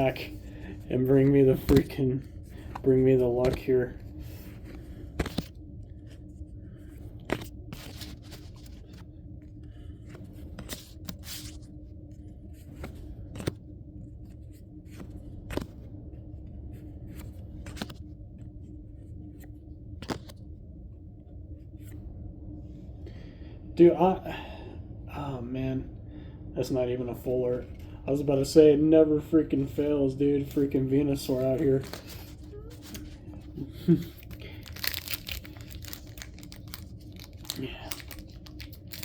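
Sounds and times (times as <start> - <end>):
steady low hum: 0.0 - 39.0
cards snapping: 34.2 - 39.0.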